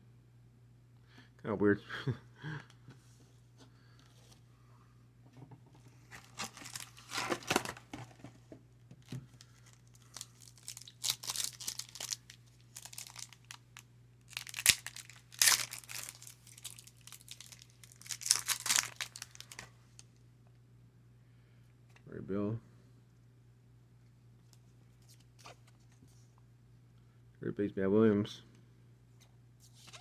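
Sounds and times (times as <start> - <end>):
wrapper crinkling and tearing: 6.1 - 8.2, 9.4 - 13.6, 14.3 - 20.1.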